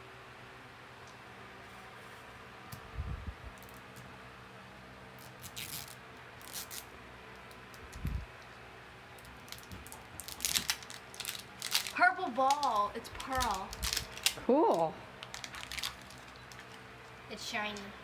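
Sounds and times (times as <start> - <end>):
plastic packaging rustling: 9.2 - 17.9.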